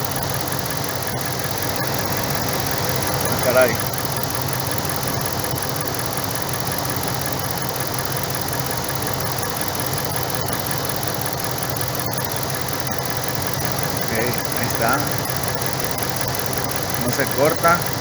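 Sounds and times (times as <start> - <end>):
engine idling: 0.0 - 18.0.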